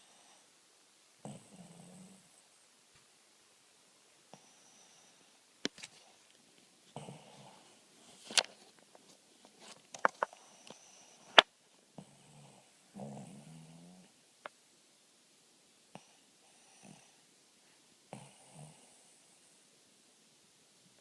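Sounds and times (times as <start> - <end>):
dog snoring: 1.2 - 2.4, 6.9 - 7.8, 12.0 - 14.1, 15.9 - 17.2, 18.1 - 19.4.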